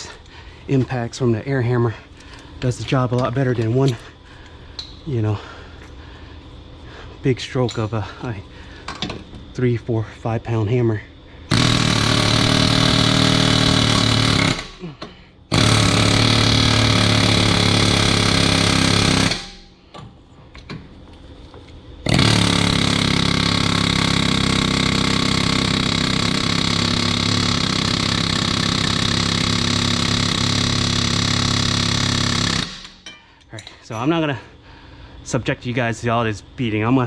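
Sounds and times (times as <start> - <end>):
pneumatic air hammer hammering: 11.5 - 20.1, 22.0 - 33.3.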